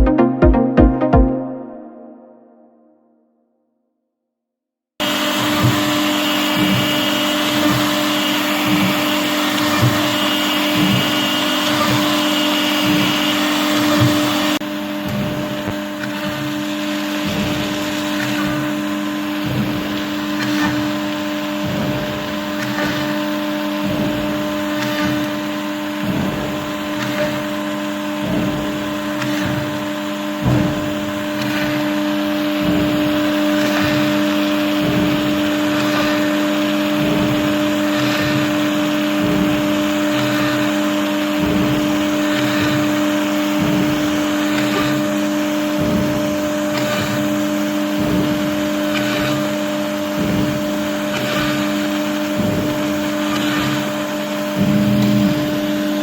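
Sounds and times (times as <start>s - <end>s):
cnc router running: 5.0s - 56.0s
machine motor hum: 19.3s - 53.8s.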